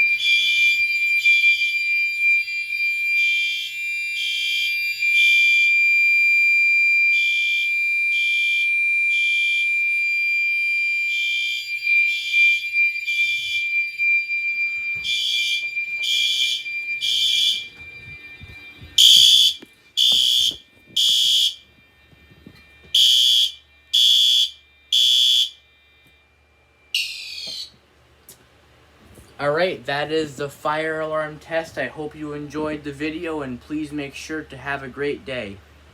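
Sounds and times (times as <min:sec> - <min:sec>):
fire alarm horn blasts: 0:00.0 - 0:28.2
steady high-pitched tone: 0:11.0 - 0:28.0.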